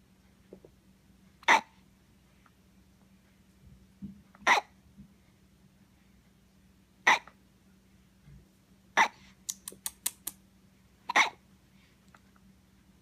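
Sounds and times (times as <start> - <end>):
person hiccuping: 11.1 - 11.4.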